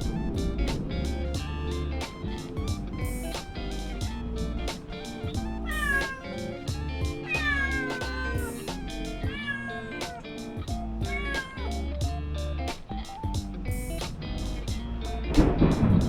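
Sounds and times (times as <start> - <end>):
kittens meowing: 0.0 - 12.0
guitar music with beat: 0.0 - 16.0.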